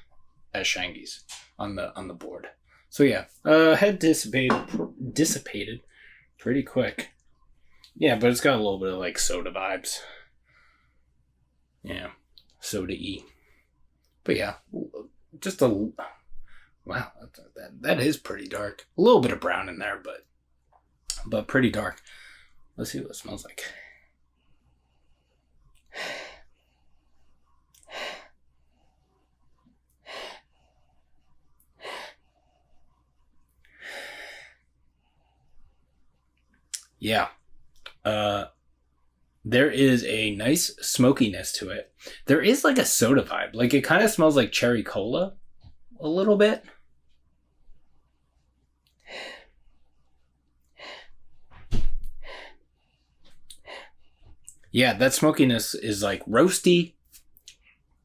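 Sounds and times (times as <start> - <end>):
person sniffing: 27.8 - 28.3, 30.0 - 30.5, 31.8 - 32.2, 49.1 - 49.6, 50.8 - 51.2, 52.1 - 52.6
man sniffing: 30.0 - 30.4, 31.8 - 32.2
low thump: 51.6 - 52.1.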